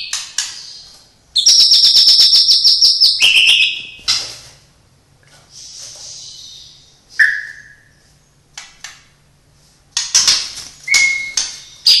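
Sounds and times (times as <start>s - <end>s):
songbird whistling and chattering: 5.6s - 7.9s, 10.9s - 12.0s.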